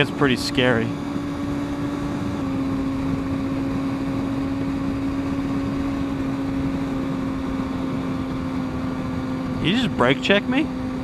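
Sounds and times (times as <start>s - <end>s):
motorcycle engine cruising: 0.0s - 11.0s
wind and road rush: 0.0s - 11.0s.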